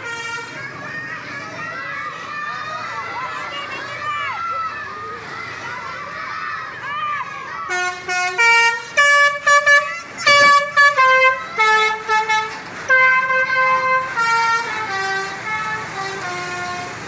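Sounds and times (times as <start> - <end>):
bus musical horn playing a tune: 0.0 - 0.7, 7.7 - 17.0.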